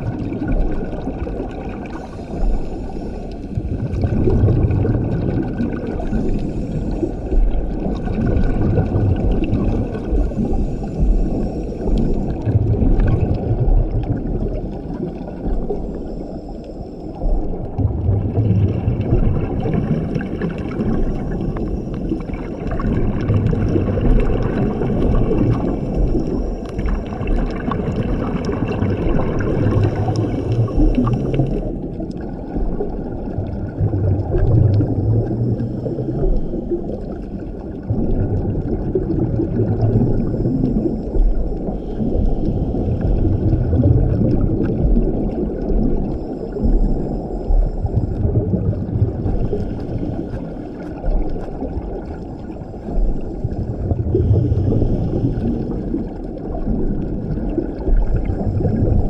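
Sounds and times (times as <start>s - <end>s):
exhaled bubbles gurgling: 0.0s - 59.0s
low underwater rush: 0.0s - 59.0s
hissing regulator inhales: 1.9s - 3.8s, 6.0s - 7.7s, 9.6s - 12.6s, 29.4s - 31.9s, 40.2s - 43.7s, 52.4s - 56.1s.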